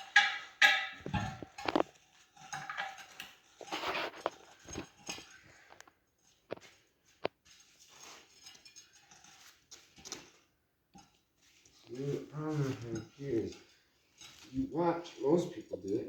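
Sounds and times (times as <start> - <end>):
rubber tire scraping on rim: 3.6 - 4.9.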